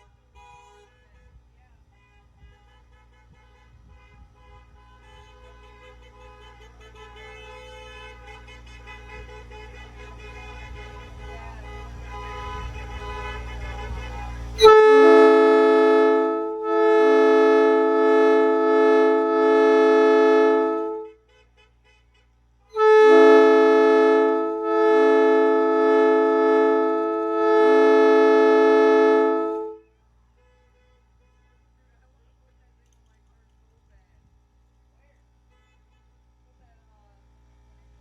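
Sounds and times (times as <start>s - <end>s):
locomotive air horn chord: 2.0s - 31.3s.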